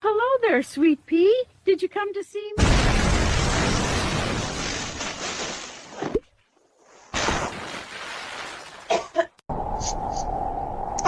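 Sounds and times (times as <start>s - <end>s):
wind and rain: 2.6s - 8.9s.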